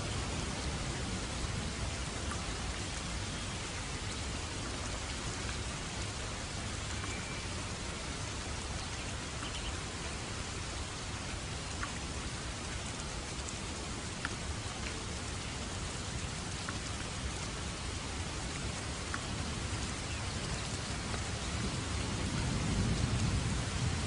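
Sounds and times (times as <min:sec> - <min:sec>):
steady rain hiss: 0:00.0 - 0:24.0.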